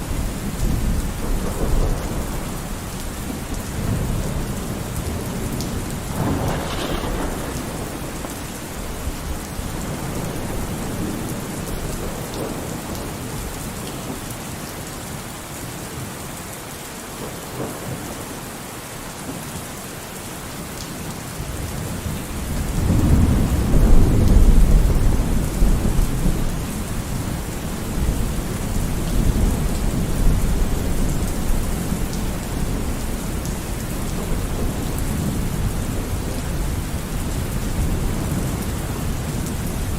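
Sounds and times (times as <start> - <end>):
thunder rumbling: 0.0 - 13.5, 21.7 - 39.9
steady rain falling: 0.0 - 39.9.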